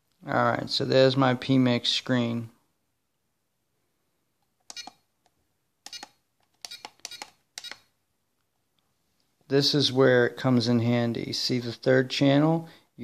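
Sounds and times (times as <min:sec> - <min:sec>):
transmitter button beeps: 0:04.7 - 0:05.0, 0:06.7 - 0:07.8.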